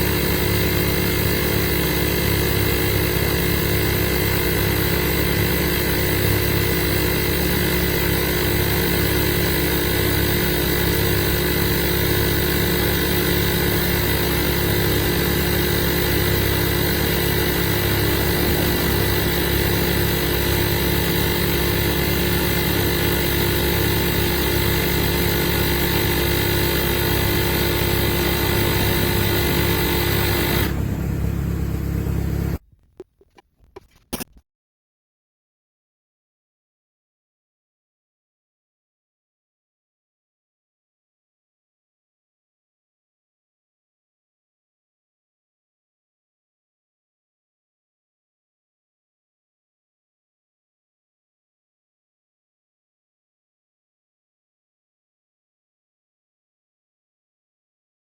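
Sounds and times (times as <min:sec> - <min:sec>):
air compressor running: 0:00.0 - 0:33.4.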